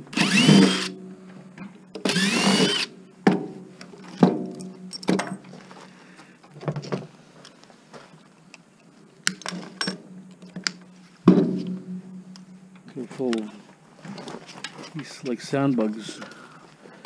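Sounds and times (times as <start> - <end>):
metal scrap clanking and rattling: 3.2 - 5.6.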